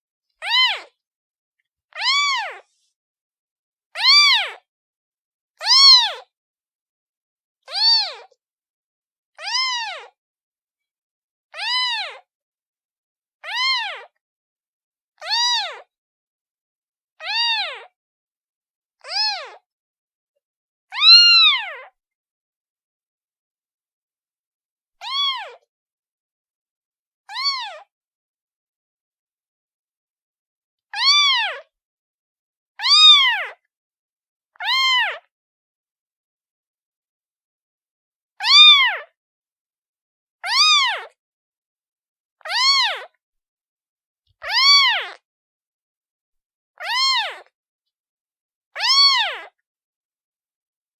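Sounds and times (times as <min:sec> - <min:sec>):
kitten meowing: 0:00.4 - 0:00.9, 0:02.0 - 0:02.7, 0:04.0 - 0:04.6, 0:05.7 - 0:06.2, 0:07.7 - 0:08.3, 0:09.4 - 0:10.1, 0:11.6 - 0:12.2, 0:13.5 - 0:14.1, 0:15.3 - 0:15.9, 0:17.2 - 0:17.9, 0:19.0 - 0:19.6, 0:21.0 - 0:21.8, 0:25.0 - 0:25.6, 0:27.3 - 0:27.8, 0:31.0 - 0:31.6, 0:32.8 - 0:33.6, 0:34.6 - 0:35.3, 0:38.4 - 0:39.1, 0:40.5 - 0:41.1, 0:42.5 - 0:43.1, 0:44.4 - 0:45.2, 0:46.8 - 0:47.5, 0:48.8 - 0:49.6.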